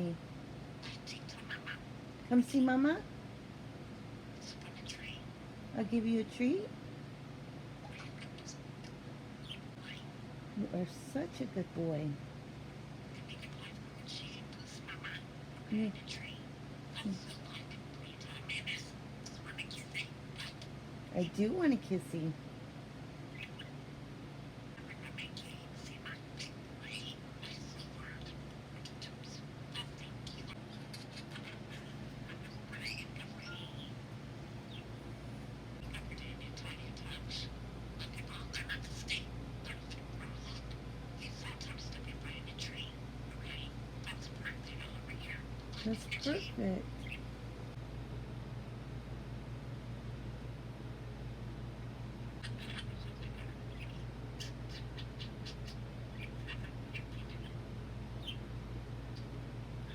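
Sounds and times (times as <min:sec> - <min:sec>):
steady low hum: 0:00.0 - 0:59.9
budgerigar chirping: 0:00.8 - 0:01.8, 0:04.4 - 0:05.2, 0:09.4 - 0:10.1, 0:13.2 - 0:16.4, 0:17.0 - 0:20.6, 0:23.3 - 0:23.8, 0:24.8 - 0:34.0, 0:34.6 - 0:34.9, 0:35.8 - 0:47.2, 0:52.4 - 0:58.5.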